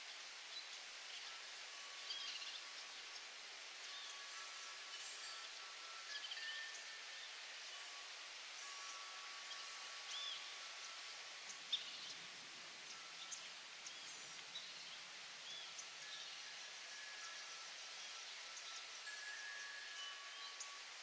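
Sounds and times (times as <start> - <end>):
steady outdoor hiss: 0.0 - 21.0.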